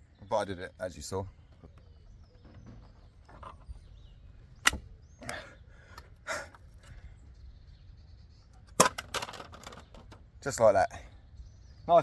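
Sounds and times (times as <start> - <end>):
plastic clip clicking: 4.6 - 5.4, 8.8 - 9.8.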